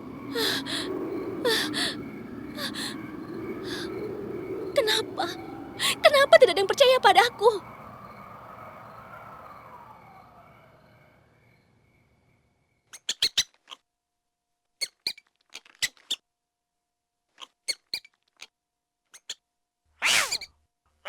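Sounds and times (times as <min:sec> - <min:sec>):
downward gliding tone: 0:00.0 - 0:12.2
sharp cartoon clicks or squeaks: 0:13.0 - 0:13.8, 0:20.0 - 0:20.5.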